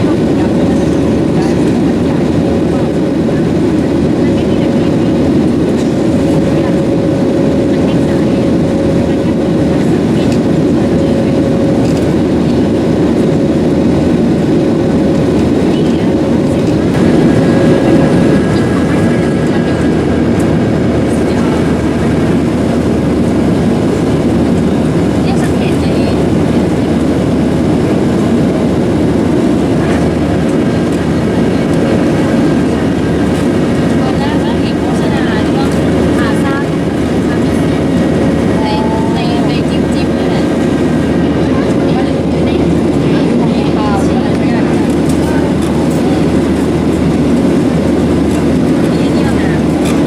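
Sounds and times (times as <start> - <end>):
rushing air: 0.0 - 25.2, 35.7 - 43.5
airliner cabin jet engine noise: 0.0 - 50.0
steady cabin hum: 0.0 - 50.0.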